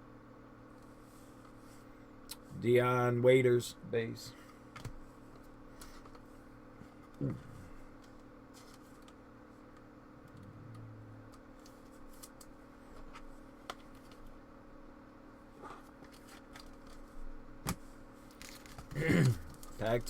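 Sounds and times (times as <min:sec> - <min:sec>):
steady low hum: 0:00.0 - 0:20.0
cards rustling: 0:08.0 - 0:09.2, 0:18.3 - 0:20.0.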